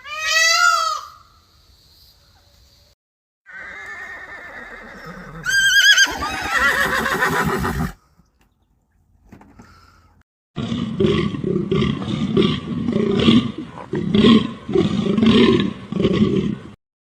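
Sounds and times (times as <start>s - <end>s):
large animal roaring: 10.6s - 16.8s.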